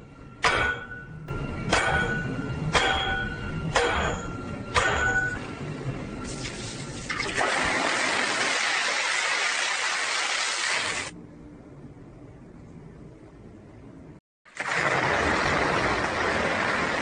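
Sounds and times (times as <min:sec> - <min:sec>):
hammer ringing on anvil: 0:00.4 - 0:05.5.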